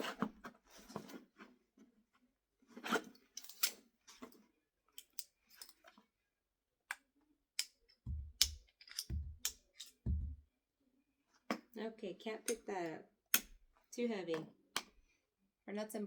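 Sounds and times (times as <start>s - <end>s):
tools clicking: 5.0s - 5.8s, 7.6s - 10.0s
dull thumps: 8.1s - 9.5s, 10.1s - 10.4s.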